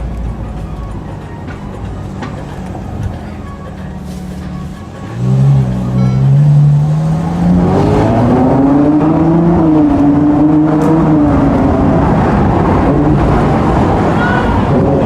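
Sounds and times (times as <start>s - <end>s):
car engine pulling under load: 0.0s - 15.0s
road noise: 0.0s - 15.0s
wind noise: 7.2s - 15.0s.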